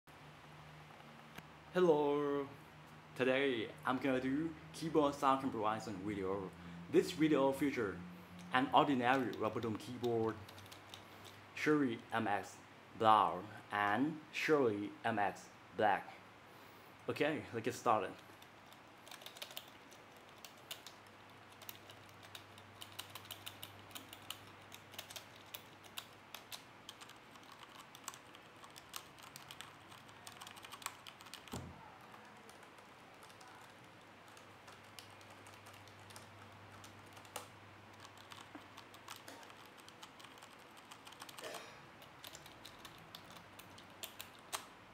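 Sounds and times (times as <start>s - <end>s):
typing on keyboards: 8.4s - 11.4s, 18.3s - 44.7s.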